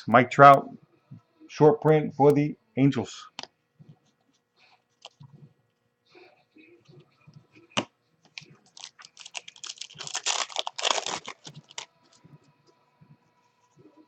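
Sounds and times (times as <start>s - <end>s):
foil wrapper tearing and crinkling: 8.4s - 11.9s.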